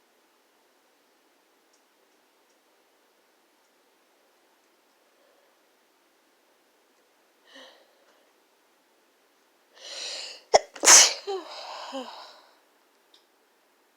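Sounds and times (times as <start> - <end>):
drawn-in breath: 9.8 - 10.5
person sniffing: 9.8 - 12.3
person sneezing: 10.0 - 12.3.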